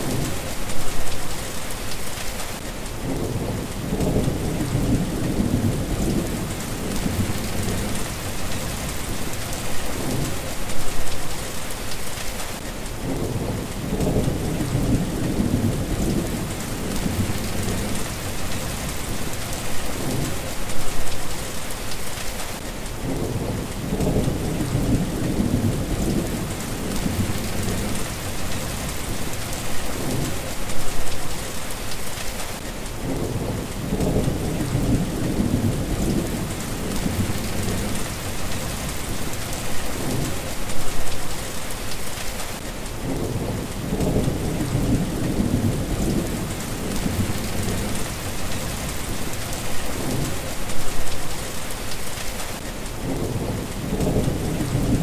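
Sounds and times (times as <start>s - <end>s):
steady rain falling: 0.0s - 55.0s
low rolling thunder: 3.0s - 11.1s, 13.0s - 20.9s, 23.0s - 30.9s, 33.0s - 41.2s, 43.0s - 51.2s, 53.0s - 55.0s.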